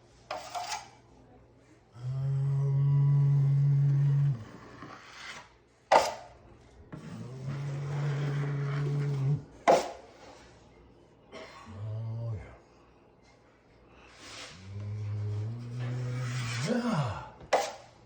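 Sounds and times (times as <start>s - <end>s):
drywall knife scraping compound: 0.2s - 1.0s, 4.2s - 6.3s, 6.9s - 10.4s, 14.2s - 17.9s.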